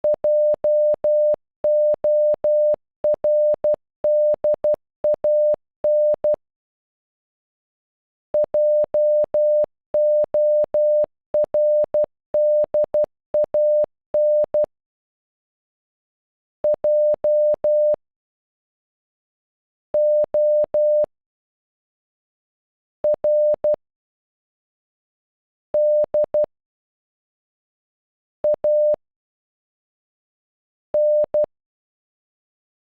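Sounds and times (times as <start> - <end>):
morse code beeps: 0.0 - 6.4, 8.4 - 14.7, 16.7 - 18.0, 20.0 - 21.1, 23.0 - 23.8, 25.8 - 26.5, 28.5 - 29.0, 31.0 - 31.5.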